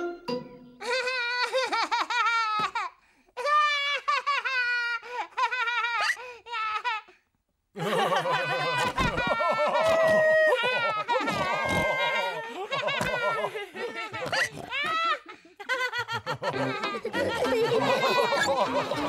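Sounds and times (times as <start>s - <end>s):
children laughing: 0.8s - 7.1s, 7.8s - 19.0s
adult laughing: 7.8s - 19.0s.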